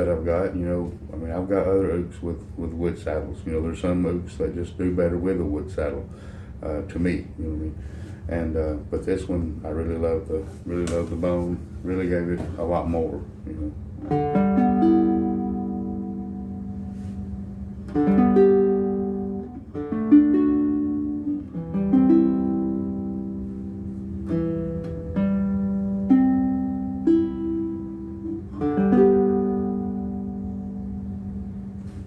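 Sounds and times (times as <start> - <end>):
ukulele slow chords: 13.5 - 32.0.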